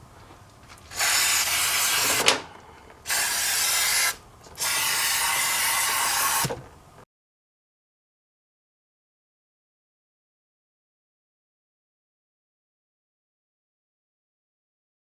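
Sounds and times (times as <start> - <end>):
aerosol spray hissing: 0.9 - 2.2, 3.1 - 6.5.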